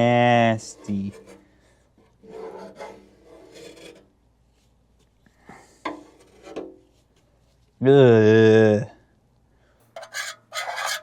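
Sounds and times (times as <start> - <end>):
rasping scrapes and rubbing: 0.5 - 4.1, 10.0 - 11.0.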